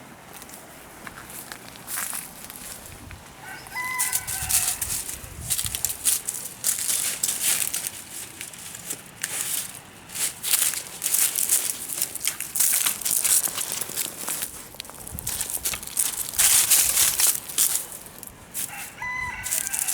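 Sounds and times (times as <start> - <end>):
rooster crowing: 3.4 - 5.2, 18.6 - 19.9
dog rustling in vegetation: 3.7 - 19.9.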